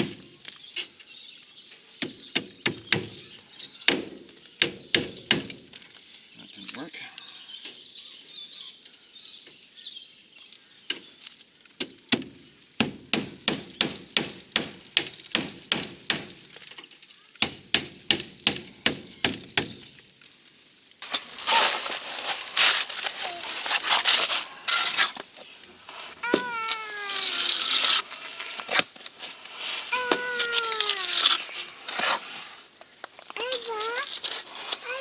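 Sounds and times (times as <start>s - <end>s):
loud rustling scraping noise: 21.0s - 35.0s.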